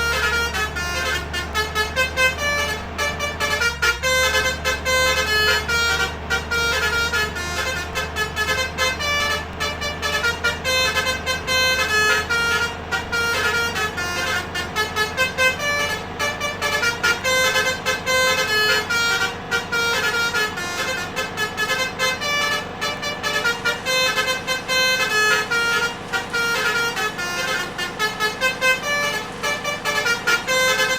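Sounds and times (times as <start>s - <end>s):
musical air horns playing tunes: 0.0s - 30.9s.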